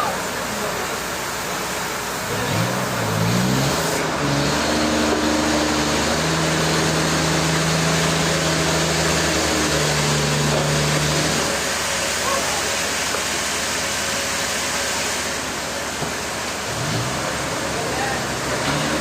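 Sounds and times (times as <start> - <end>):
engine revving: 2.1 - 12.4, 16.6 - 19.0.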